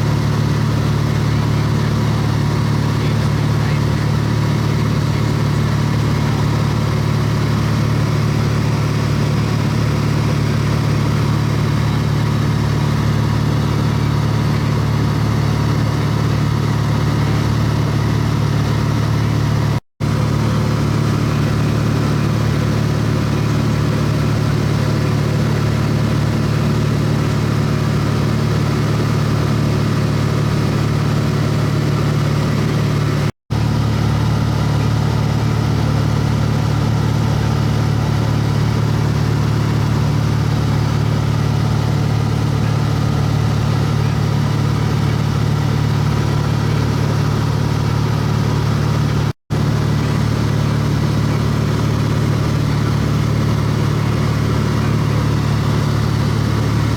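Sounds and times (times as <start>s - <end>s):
airplane engine drone in cabin: 0.0s - 56.9s.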